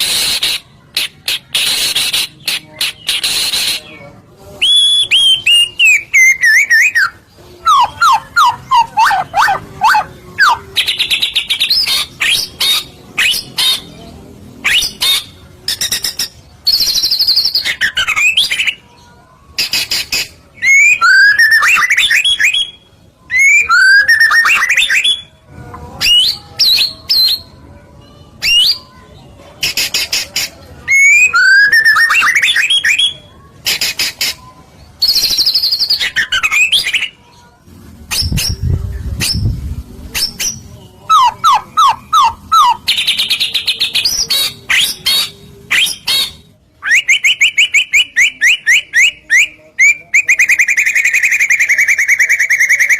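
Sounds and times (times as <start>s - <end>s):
bird whistled song: 4.6s - 13.9s, 14.6s - 18.8s, 19.7s - 25.4s, 28.4s - 28.9s, 30.9s - 33.2s, 35.0s - 37.2s, 40.2s - 52.9s.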